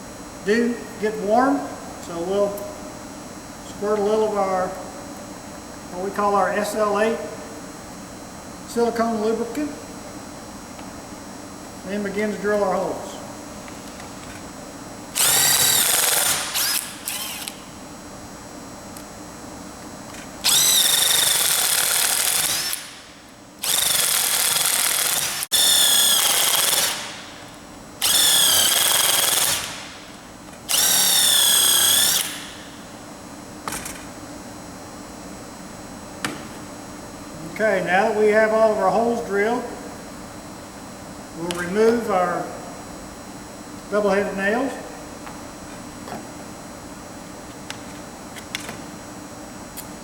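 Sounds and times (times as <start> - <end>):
impact wrench bursts: 15.1 - 17.6, 20.4 - 27.3, 28.0 - 30.0, 30.7 - 32.7.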